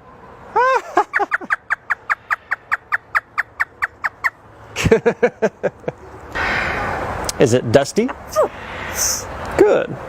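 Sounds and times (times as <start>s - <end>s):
parrot imitating laughter: 0.6s - 4.2s.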